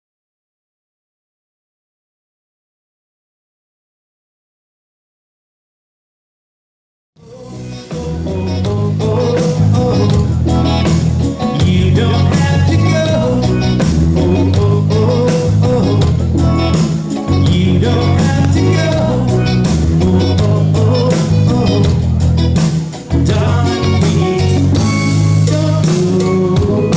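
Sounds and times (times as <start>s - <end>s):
band playing reggae rock: 7.2s - 26.9s
heavy bass line: 7.2s - 26.9s.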